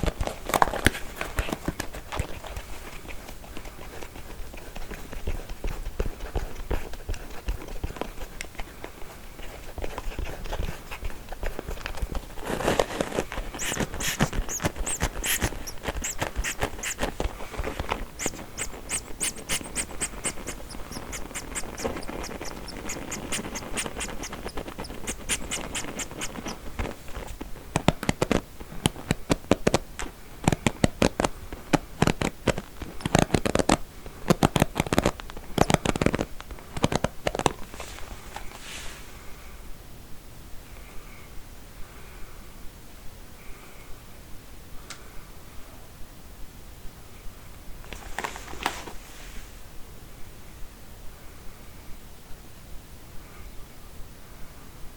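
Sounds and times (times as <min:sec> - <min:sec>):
comb taps: 0:00.0 - 0:29.8
combs clicking and scratching: 0:00.0 - 0:38.6, 0:47.9 - 0:49.0.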